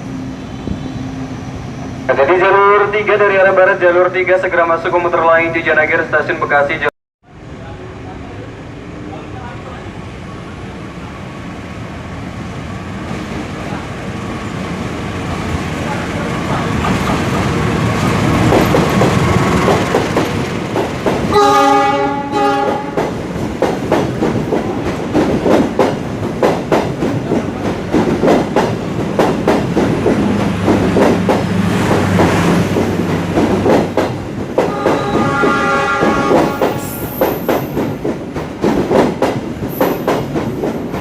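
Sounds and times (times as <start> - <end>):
train wheels clacking on rails: 15.8 - 41.0
train horn: 21.3 - 23.0, 34.6 - 37.1.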